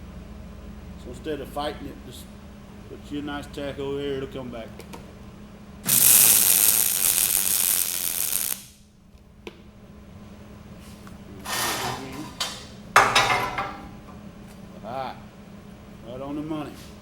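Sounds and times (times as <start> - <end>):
welding arc crackling and hissing: 5.8 - 8.8.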